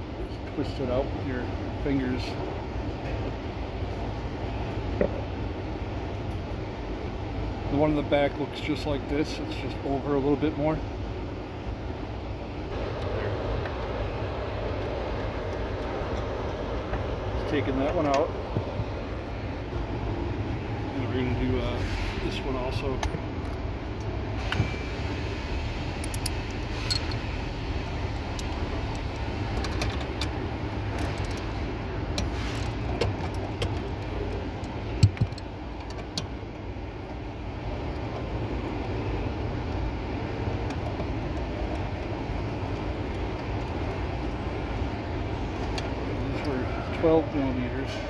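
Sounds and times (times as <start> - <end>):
steady low hum: 0.0 - 48.0
metallic tool clicks and clinks: 26.0 - 27.2.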